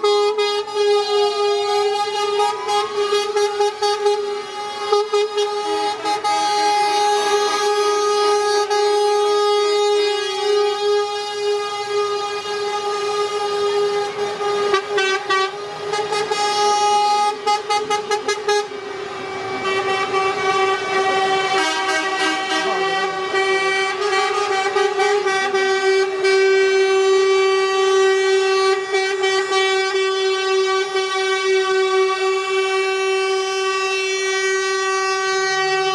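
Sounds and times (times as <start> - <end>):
long steady truck horn: 0.0 - 35.9
short truck horn toots: 19.4 - 35.9.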